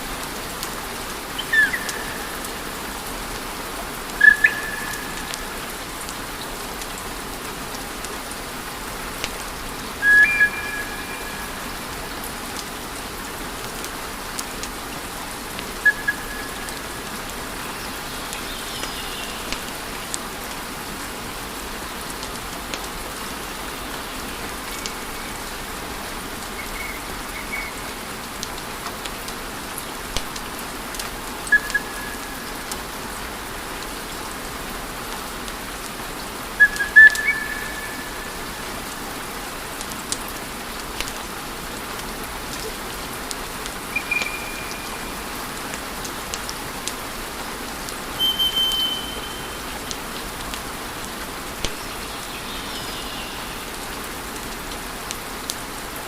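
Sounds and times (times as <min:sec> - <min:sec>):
short high whistles: 0:48.2 - 0:49.6.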